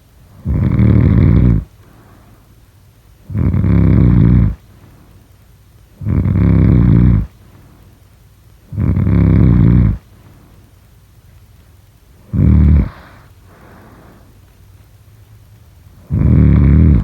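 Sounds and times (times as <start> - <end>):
loud rhythmic snoring: 0.3 - 2.4, 3.2 - 4.8, 5.9 - 7.6, 8.6 - 10.4, 12.2 - 14.3, 16.0 - 17.0.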